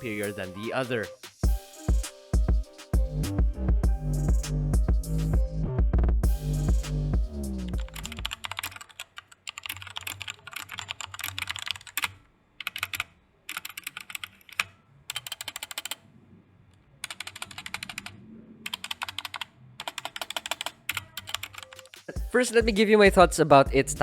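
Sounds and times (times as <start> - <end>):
mechanical keyboard typing: 7.8 - 16.0, 17.0 - 22.1.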